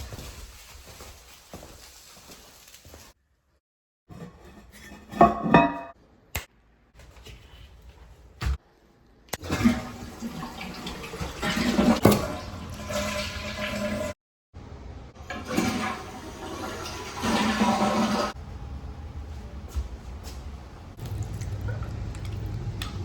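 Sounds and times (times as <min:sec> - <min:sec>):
toilet flushing: 0:09.4 - 0:14.2, 0:15.1 - 0:18.6.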